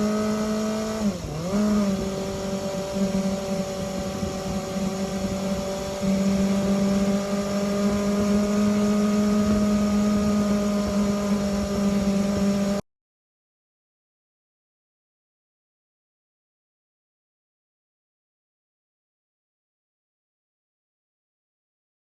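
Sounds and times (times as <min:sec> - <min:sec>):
motorcycle engine running high: 0:00.0 - 0:12.8.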